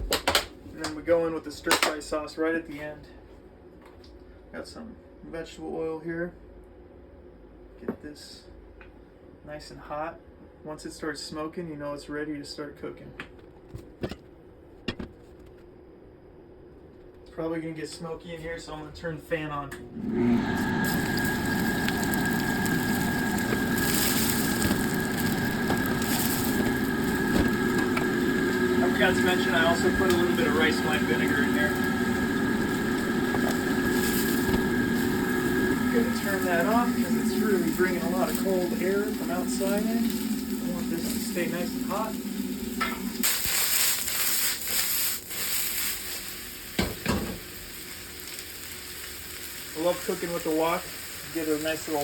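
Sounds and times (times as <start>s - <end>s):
exhaust fan running: 16.5s - 45.3s
low hum: 19.7s - 43.6s
vegetables sizzling in hot oil: 20.2s - 52.0s.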